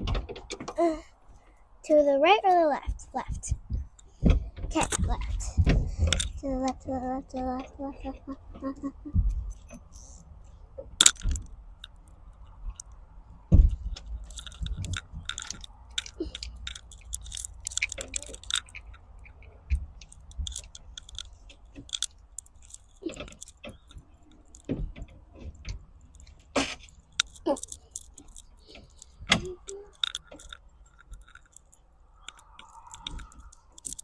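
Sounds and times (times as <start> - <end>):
screwdriver clicks and scrapes: 14.2 - 24.7, 26.1 - 34.0.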